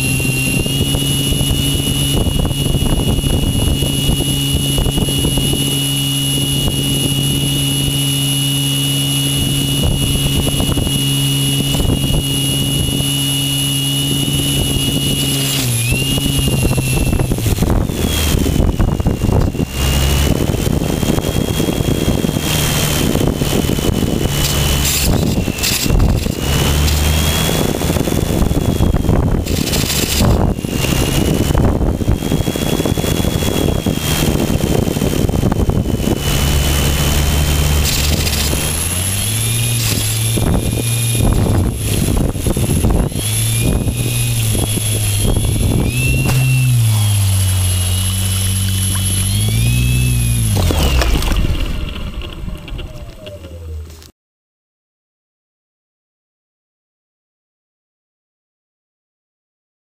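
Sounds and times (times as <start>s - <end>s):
wind over microphone: 0.0s - 53.4s
electric motor and propeller whining: 0.0s - 54.1s.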